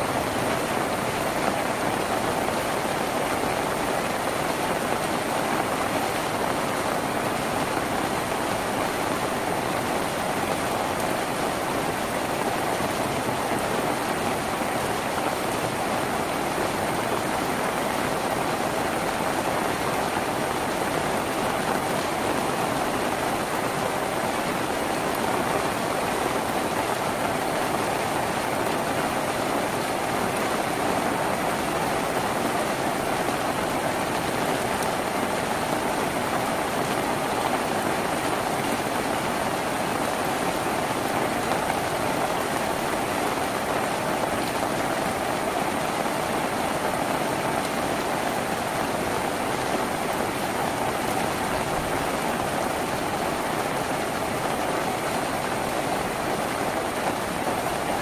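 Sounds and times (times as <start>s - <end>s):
heavy rain on a tin roof: 0.0s - 58.0s.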